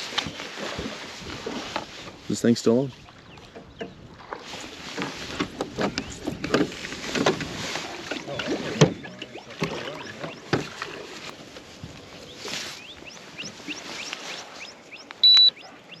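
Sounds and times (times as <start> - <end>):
knocks and clatters on boat: 3.3 - 11.6
water splashing: 4.0 - 11.7.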